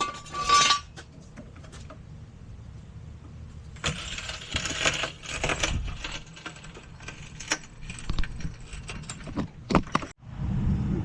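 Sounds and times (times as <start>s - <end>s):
metallic clinking and clattering: 0.0s - 1.0s, 3.8s - 10.2s.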